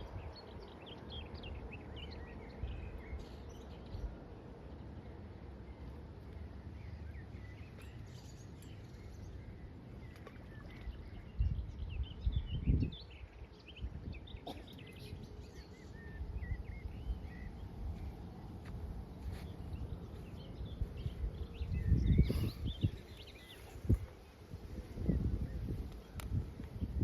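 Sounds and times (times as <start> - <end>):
small birds chirping: 0.0 - 27.0
wind rumbling on microphone: 6.8 - 27.0.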